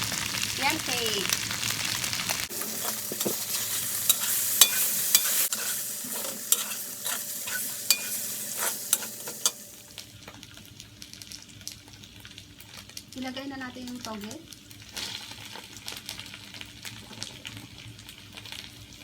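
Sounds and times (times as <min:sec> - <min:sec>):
food sizzling in hot oil: 0:00.0 - 0:19.0
utensil scraping a pan: 0:02.5 - 0:09.8.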